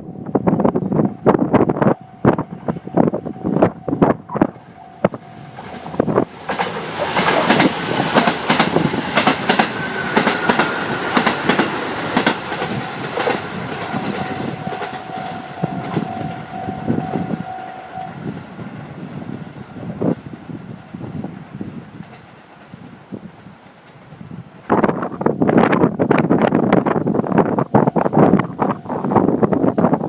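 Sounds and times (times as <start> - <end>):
diesel train passing: 0.0 - 29.6
train wheels clacking on rail joints: 5.1 - 16.4.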